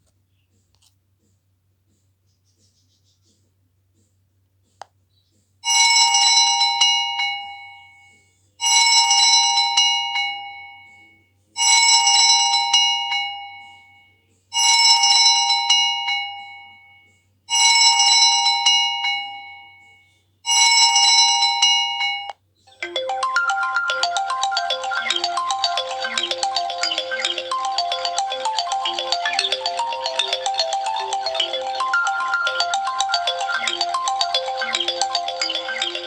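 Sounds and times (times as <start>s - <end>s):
busy melodic ringtone: 22.7s - 36.0s
phone ringtone chord: 22.7s - 36.0s.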